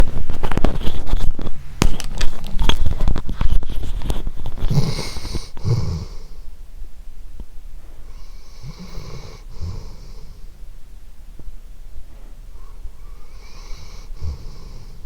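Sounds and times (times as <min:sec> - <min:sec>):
dog snoring: 0:04.6 - 0:06.5, 0:08.1 - 0:10.6, 0:12.6 - 0:15.0.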